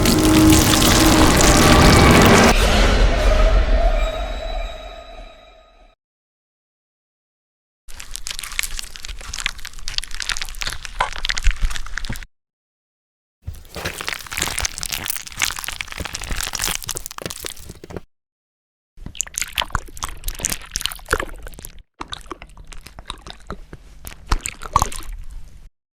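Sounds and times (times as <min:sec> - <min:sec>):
flesh crawling with maggots: 0:00.0 - 0:02.5, 0:07.9 - 0:12.3, 0:13.5 - 0:18.1, 0:19.1 - 0:25.4
dense crackling and crunching: 0:00.0 - 0:02.6, 0:07.9 - 0:12.3, 0:13.5 - 0:18.1.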